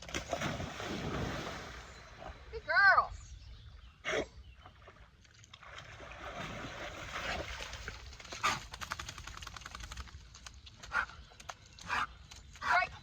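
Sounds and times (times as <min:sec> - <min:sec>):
river water sloshing and splashing: 0:00.0 - 0:02.4, 0:04.8 - 0:08.4
fine rapid water patter: 0:05.6 - 0:10.5.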